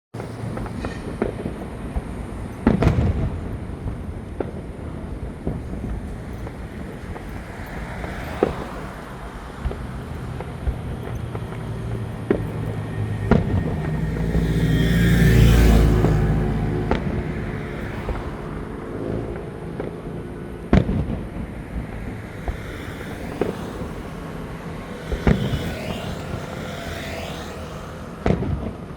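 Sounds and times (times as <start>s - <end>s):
steady low rumble: 0.2s - 23.1s
fireworks bangs: 0.2s - 26.9s, 28.2s - 28.9s.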